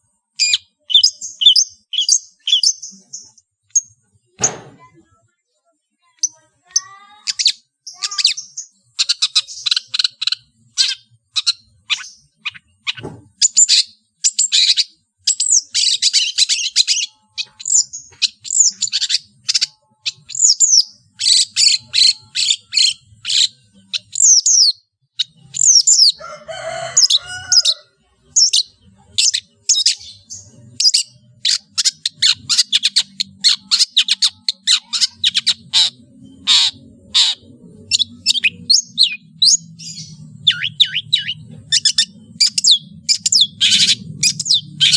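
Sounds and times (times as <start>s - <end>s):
shrike singing: 15.3s - 44.9s.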